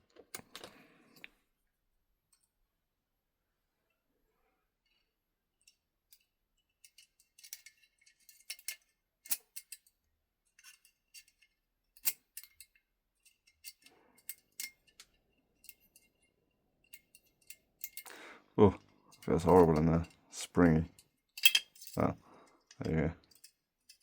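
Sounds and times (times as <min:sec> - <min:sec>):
lock picks clicking and scraping: 0:06.8 - 0:09.9, 0:10.5 - 0:16.2, 0:16.8 - 0:18.1, 0:19.1 - 0:24.0.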